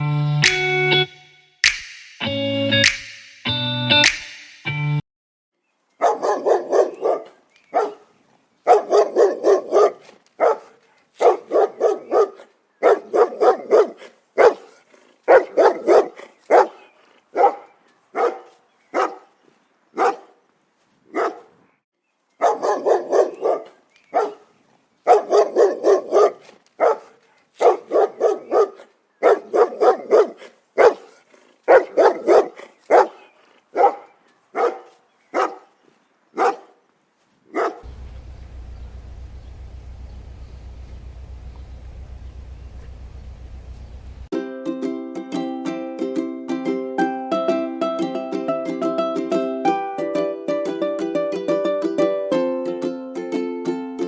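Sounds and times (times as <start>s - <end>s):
dog barking: 6.0s - 19.4s, 20.0s - 20.4s, 21.1s - 21.6s, 22.4s - 35.8s, 36.4s - 36.8s, 37.5s - 38.4s.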